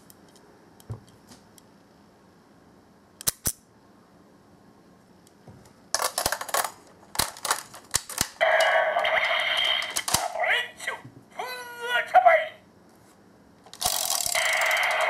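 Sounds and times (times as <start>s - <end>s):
electronic toy voice: 8.4s - 12.6s
plastic toy battery clicks: 9.6s - 10.3s, 13.7s - 15.0s.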